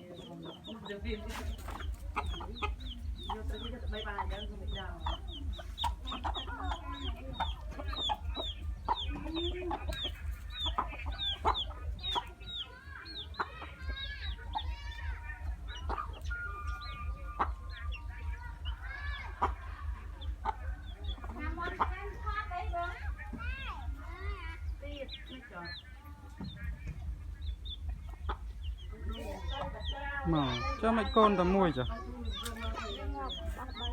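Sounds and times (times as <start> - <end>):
chickens clucking: 0.0 - 33.9
chicks peeping: 0.0 - 33.9
steady low hum: 13.7 - 33.9.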